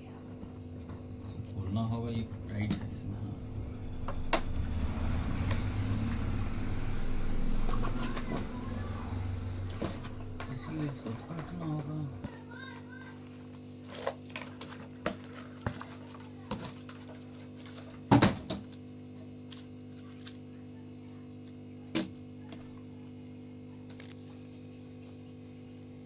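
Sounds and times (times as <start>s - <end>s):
steady hum: 0.0s - 12.4s.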